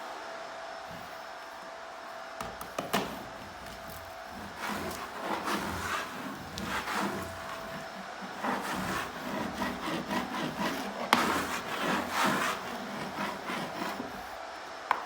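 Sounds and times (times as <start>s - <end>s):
tool rubbing over wallpaper: 2.4s - 14.4s.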